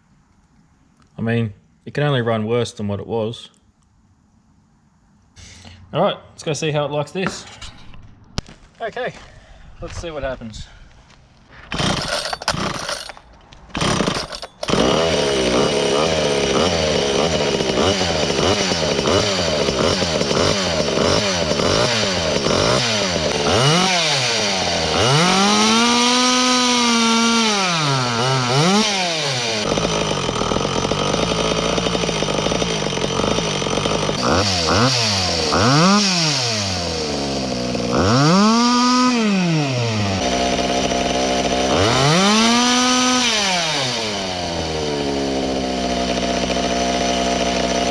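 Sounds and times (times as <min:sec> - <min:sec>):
chainsaw pull-start: 0:11.6 - 0:47.9
chainsaw engine revving: 0:11.7 - 0:47.9.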